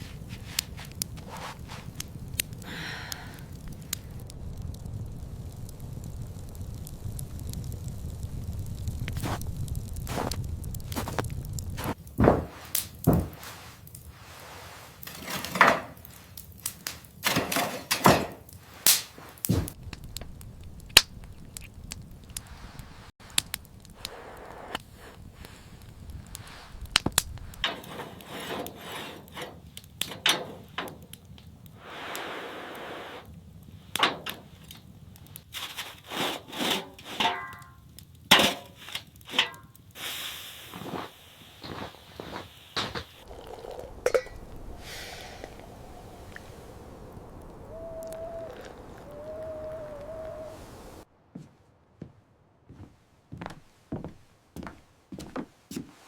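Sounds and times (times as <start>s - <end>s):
scraping hiss: 0.0s - 4.9s, 9.0s - 19.8s, 21.5s - 30.9s, 31.7s - 34.6s, 35.2s - 37.5s, 38.3s - 51.1s
woody knocks and cracks: 9.1s - 13.4s
irregular knocks and thuds: 11.8s - 13.5s, 19.5s - 20.3s.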